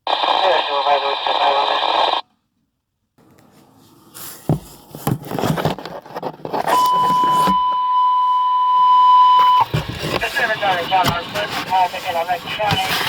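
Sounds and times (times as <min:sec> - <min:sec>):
radio static crackling: 0:00.0 - 0:02.2, 0:09.4 - 0:13.0
radio transmission clicks: 0:00.1 - 0:02.2, 0:09.3 - 0:13.0.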